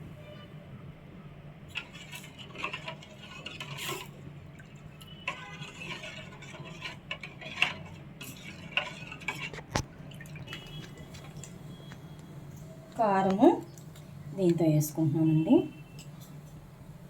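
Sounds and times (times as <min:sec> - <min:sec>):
spoon scraping a bowl: 0:01.7 - 0:04.2, 0:05.0 - 0:09.8.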